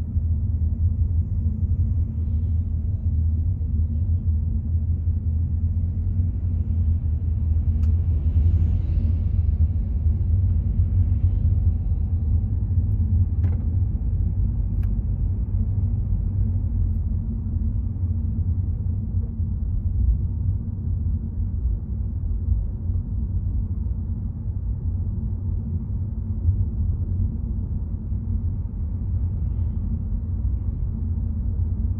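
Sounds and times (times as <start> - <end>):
car driving rumble: 0.0 - 31.9.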